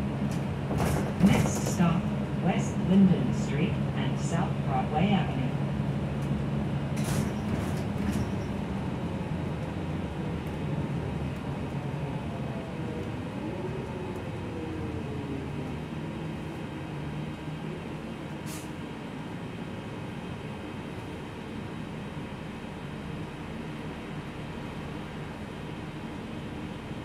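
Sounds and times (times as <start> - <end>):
bus engine hum and whine: 0.0 - 27.0
brief air hisses: 18.5 - 18.7.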